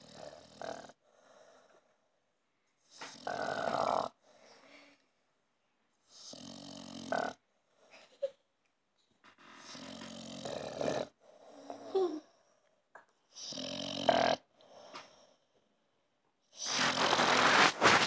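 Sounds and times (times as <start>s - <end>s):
dog snoring: 0.0s - 1.8s, 2.9s - 4.2s, 6.1s - 7.4s, 9.5s - 12.0s, 13.3s - 14.6s, 16.6s - 18.0s.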